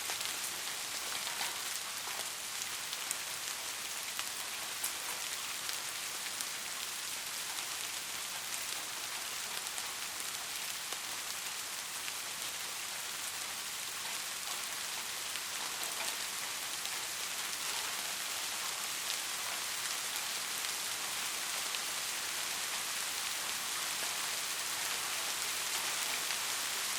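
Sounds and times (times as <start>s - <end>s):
soft rain falling: 0.0s - 26.9s
raindrop ticks: 0.1s - 2.4s, 14.0s - 19.8s.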